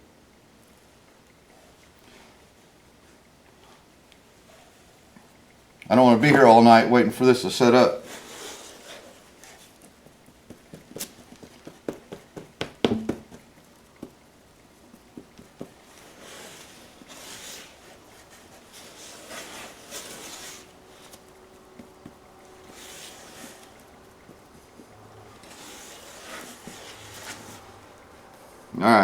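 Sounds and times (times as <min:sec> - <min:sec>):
spreader scraping body filler: 0:07.9 - 0:09.9, 0:15.2 - 0:28.8
plastic spreader clicking and tapping: 0:10.4 - 0:14.2.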